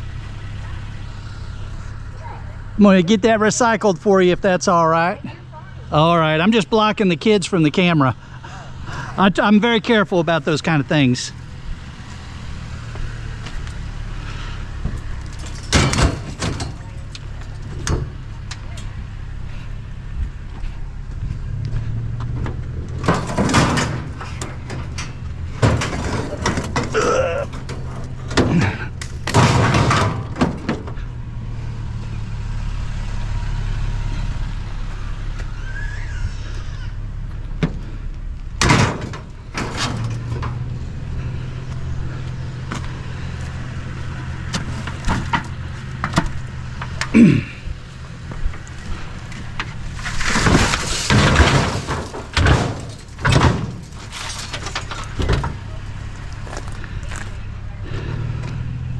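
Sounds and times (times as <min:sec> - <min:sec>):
vehicle engine idling: 0:00.0 - 0:58.9
scrap and car doors banging: 0:12.0 - 0:19.0, 0:21.8 - 0:31.3, 0:35.5 - 0:41.4, 0:42.6 - 0:57.3.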